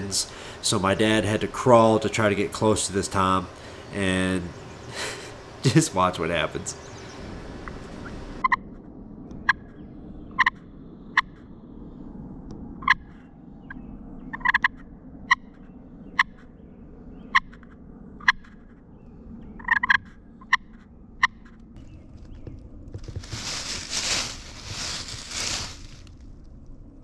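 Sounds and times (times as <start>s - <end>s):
turkey clucking: 0.0s - 7.2s.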